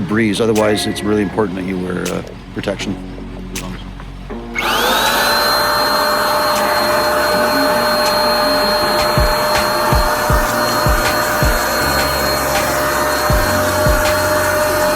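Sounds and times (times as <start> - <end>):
paint spray gun motor whine: 4.6 - 14.9.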